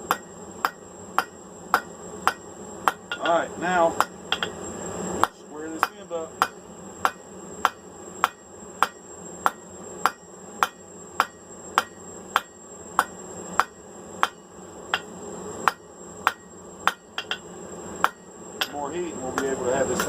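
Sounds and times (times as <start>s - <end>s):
faint high whine: 0.0s - 20.0s
hammer ringing on anvil: 15.7s - 17.4s, 18.0s - 18.8s.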